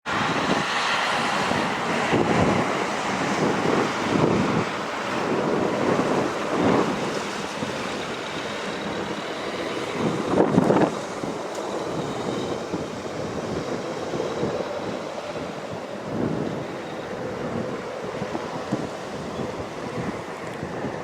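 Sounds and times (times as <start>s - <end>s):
helicopter engines and rotor: 0.0s - 21.0s
wind buffeting microphone: 0.0s - 21.0s.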